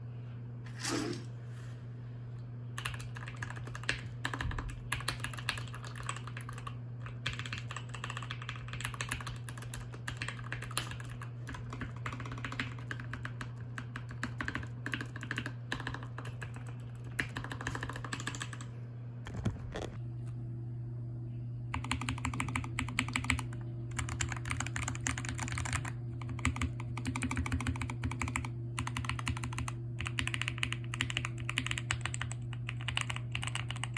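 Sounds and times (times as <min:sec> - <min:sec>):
mechanical keyboard typing: 0:02.8 - 0:18.7, 0:21.8 - 0:33.9
low hum: 0:18.6 - 0:21.8.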